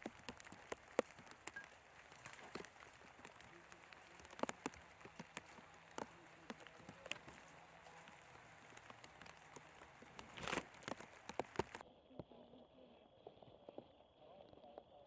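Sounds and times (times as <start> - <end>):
light rain falling: 0.0 - 11.8.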